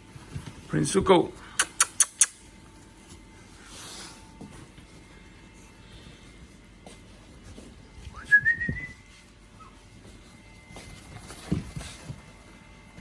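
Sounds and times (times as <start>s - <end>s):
person whistling: 8.2s - 9.0s.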